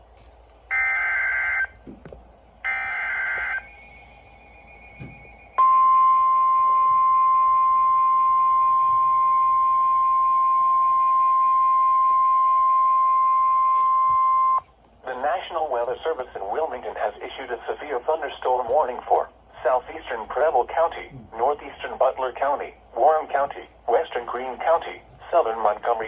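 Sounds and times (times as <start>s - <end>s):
steady alarm tone: 0.7s - 1.8s, 2.6s - 14.7s.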